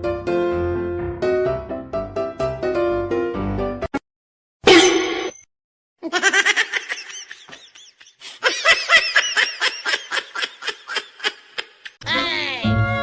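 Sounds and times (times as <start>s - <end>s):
high-pitched laughter: 6.0s - 12.0s.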